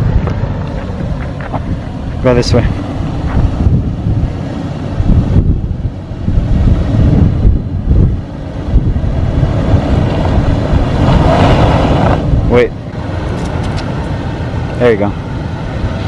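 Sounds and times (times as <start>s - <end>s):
suv engine running under load: 0.0s - 16.0s
wind buffeting microphone: 0.0s - 16.0s.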